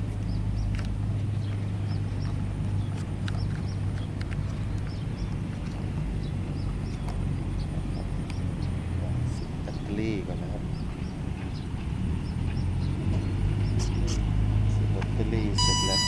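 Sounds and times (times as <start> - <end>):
low outdoor rumble: 0.0 - 16.0
light clicks: 0.2 - 5.9
short high chirps: 15.6 - 16.0.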